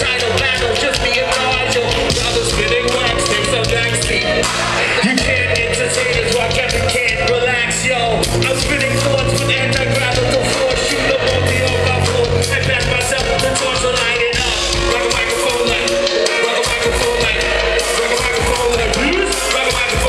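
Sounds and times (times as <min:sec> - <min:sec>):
live band playing: 0:00.0 - 0:20.0
steady drumbeat: 0:00.0 - 0:20.0
sustained bass notes: 0:03.8 - 0:15.7.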